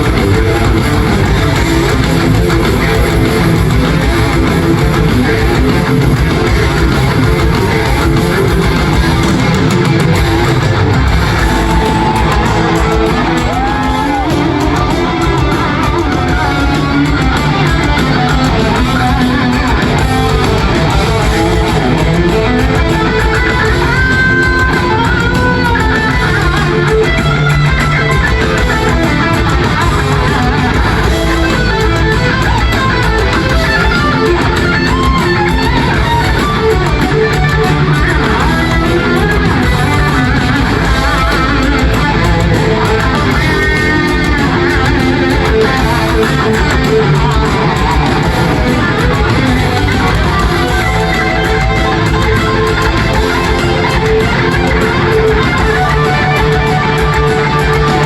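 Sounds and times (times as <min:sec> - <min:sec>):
heavy metal music: 0:00.0 - 0:58.0.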